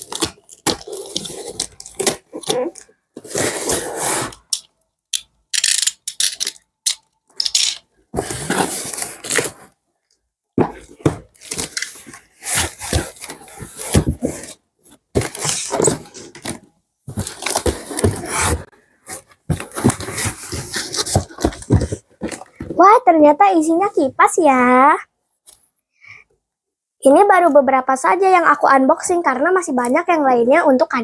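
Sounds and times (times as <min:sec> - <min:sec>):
packaging tearing and rustling: 0:00.0 - 0:04.5.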